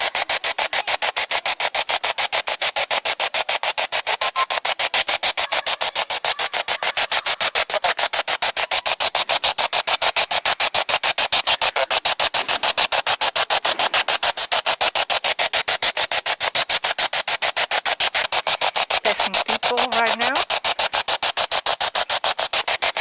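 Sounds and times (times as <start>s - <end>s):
pulsing radio static: 4.0s - 15.7s, 17.7s - 23.0s.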